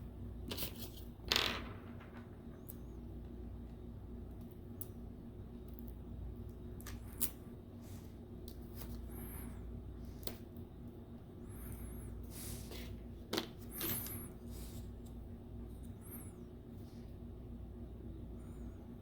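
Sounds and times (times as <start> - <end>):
handling of tablet parts and tools: 12.5 - 15.2.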